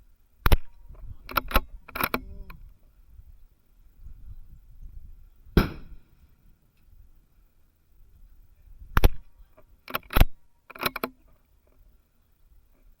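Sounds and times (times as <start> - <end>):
rifle bolt metallic clicks: 0.4 - 2.3, 9.0 - 9.3, 9.9 - 11.2
loud rifle shot: 5.6 - 6.1.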